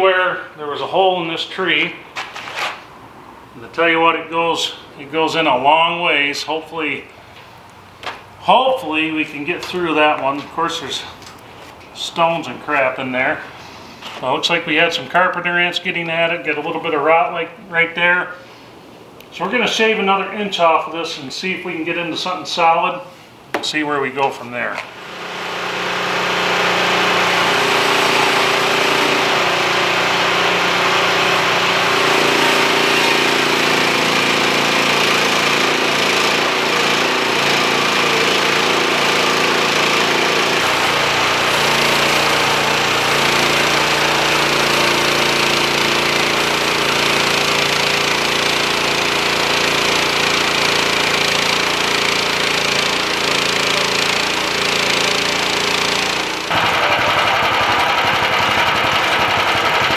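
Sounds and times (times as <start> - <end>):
bandsaw mill cutting log: 24.6 - 59.9.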